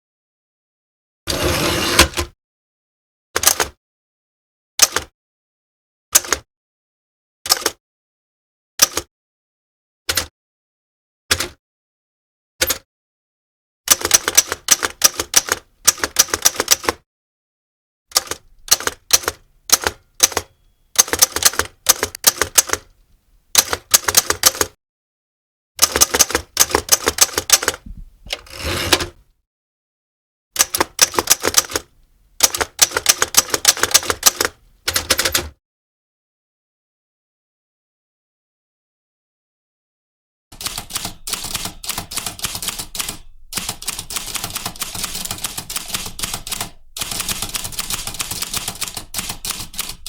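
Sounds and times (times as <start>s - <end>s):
rasping sound: 1.3s - 2.1s, 28.3s - 29.2s
typewriter keys clacking: 13.9s - 17.0s, 18.1s - 22.9s, 23.6s - 24.7s, 25.8s - 29.2s, 30.6s - 35.5s, 40.6s - 50.0s.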